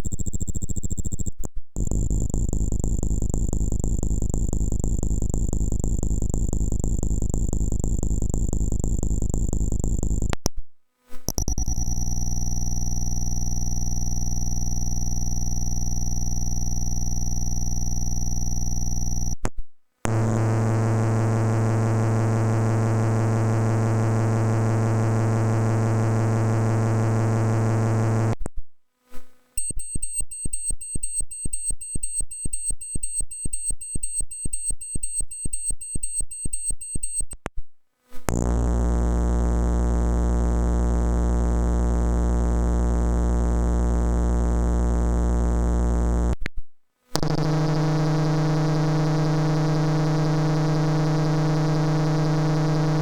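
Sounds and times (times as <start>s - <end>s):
synthesizer buzzing drone: 11.5s - 19.4s.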